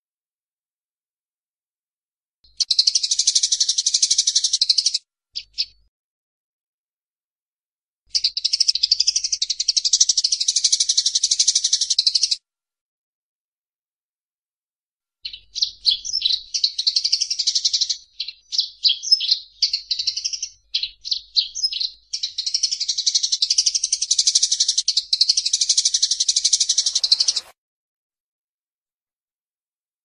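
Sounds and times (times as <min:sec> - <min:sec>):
sparrows chirping and chattering: 0:02.5 - 0:05.8, 0:08.1 - 0:12.4, 0:15.2 - 0:27.5.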